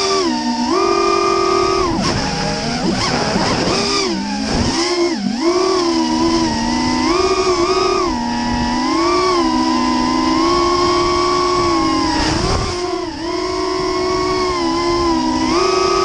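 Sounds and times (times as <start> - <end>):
quadcopter motors whining: 0.0 - 16.0.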